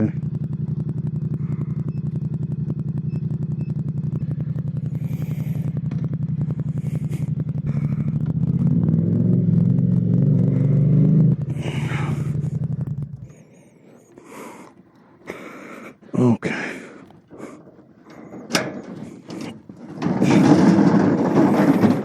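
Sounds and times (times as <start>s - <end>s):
motorcycle engine idling and revving: 0.0s - 22.0s.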